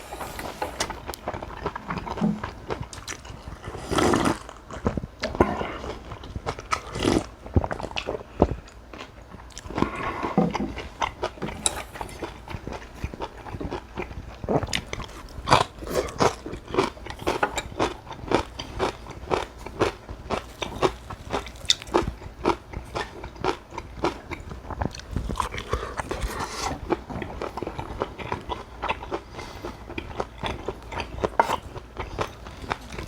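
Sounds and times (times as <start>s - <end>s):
person chewing food: 0.0s - 33.0s.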